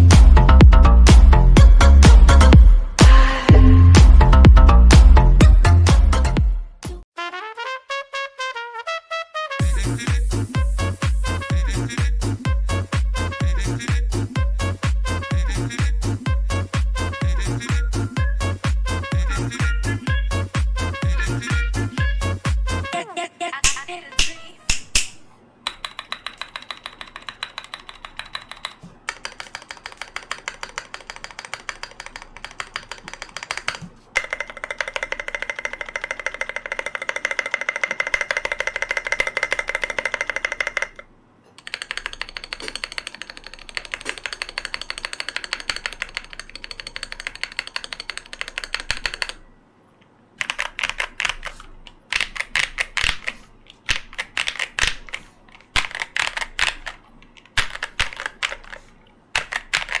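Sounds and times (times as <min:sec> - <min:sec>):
fast typing on mechanical keyboard: 0:25.7 - 0:41.0, 0:41.6 - 0:49.4, 0:50.4 - 1:00.0.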